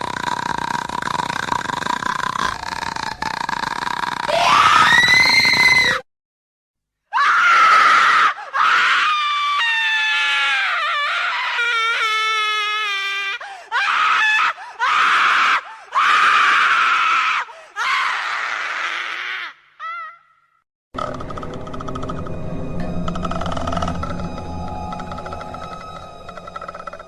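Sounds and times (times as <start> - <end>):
person screaming: 4.3 - 6.0
wavering wail: 21.0 - 27.0.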